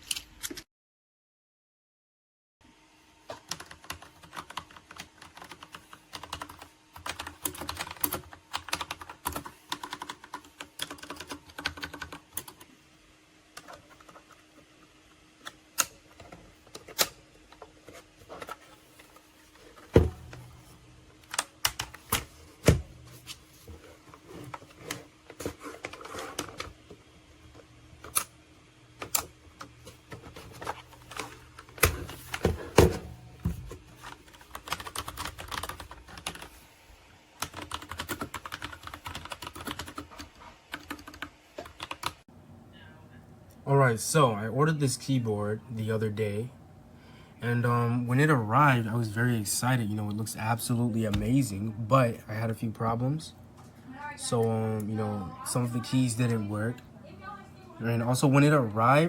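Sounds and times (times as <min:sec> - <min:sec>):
mechanical keyboard typing: 0:03.4 - 0:12.7, 0:34.0 - 0:36.5, 0:37.4 - 0:42.2.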